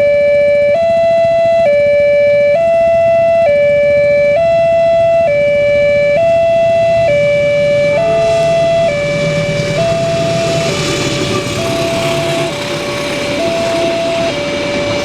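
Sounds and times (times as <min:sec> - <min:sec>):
level crossing two-tone siren: 0:00.0 - 0:15.0
rushing noise: 0:05.6 - 0:15.0.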